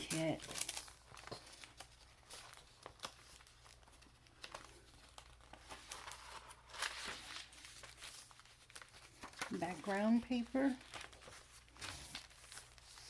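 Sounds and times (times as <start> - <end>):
paper pages rustling and crinkling: 0.0 - 13.0.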